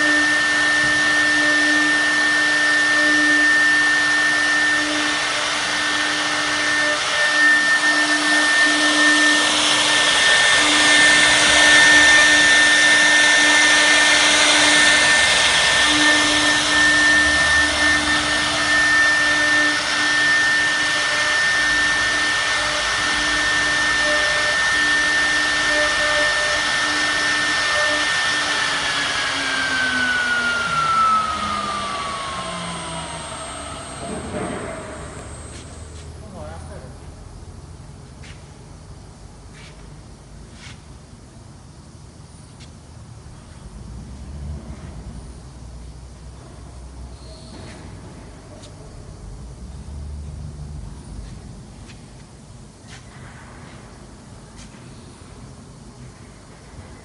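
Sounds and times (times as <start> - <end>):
router spindle whining: 0.0 - 36.9.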